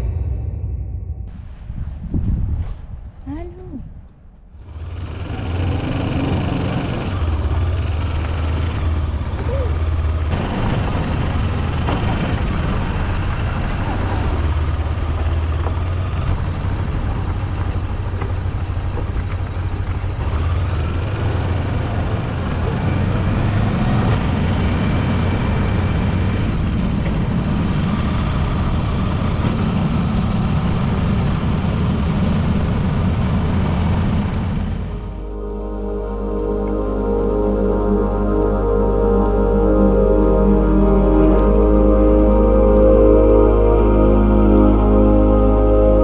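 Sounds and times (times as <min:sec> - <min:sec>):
wind noise: 0:00.0 - 0:07.2
motorcycle engine drone: 0:00.0 - 0:46.0
road noise: 0:00.0 - 0:46.0.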